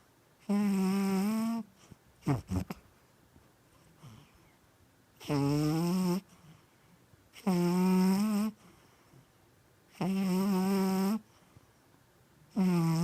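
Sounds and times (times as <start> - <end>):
cat snoring: 0.5 - 2.8, 5.2 - 6.3, 7.4 - 8.6, 9.9 - 11.2, 12.5 - 13.0
quiet breathing: 1.6 - 4.8, 6.2 - 7.5, 8.5 - 9.5, 11.2 - 12.6.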